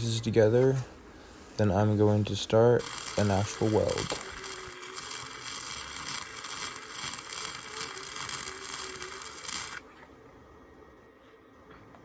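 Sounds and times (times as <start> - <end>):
arc welder crackling: 1.8 - 9.9.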